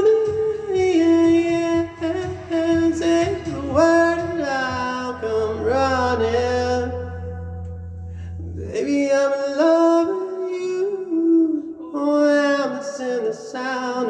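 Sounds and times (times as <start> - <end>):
person singing slow pop melody: 0.0 - 14.0
steady low hum: 4.8 - 8.8.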